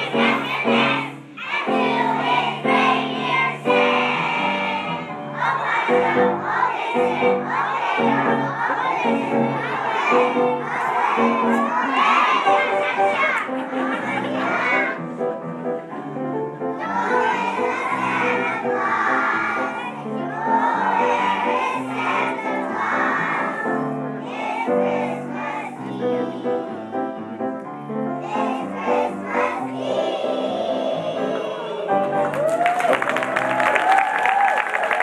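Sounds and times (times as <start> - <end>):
children singing: 0.0 - 27.4, 28.1 - 32.3
musical accompaniment: 0.0 - 35.0
applause: 32.0 - 35.0.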